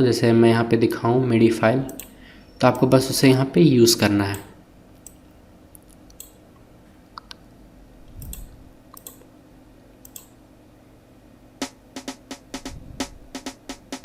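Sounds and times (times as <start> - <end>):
computer mouse clicks: 5.8 - 6.4, 8.1 - 9.3, 10.0 - 10.3
snare roll: 11.6 - 14.0.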